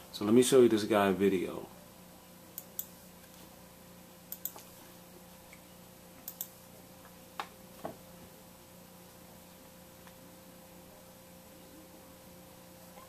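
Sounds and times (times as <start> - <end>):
faint electrical hum: 0.0 - 13.0
computer mouse clicking: 4.3 - 4.7, 6.2 - 6.6.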